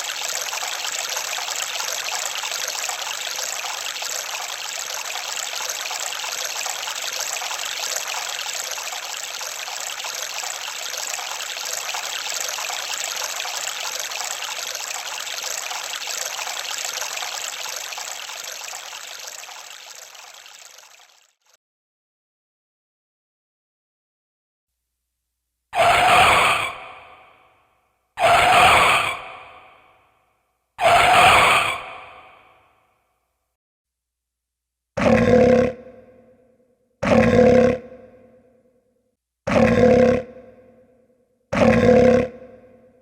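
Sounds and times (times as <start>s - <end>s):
trickling stream: 0.0s - 21.6s, 25.8s - 27.6s, 28.2s - 30.0s, 30.8s - 32.7s.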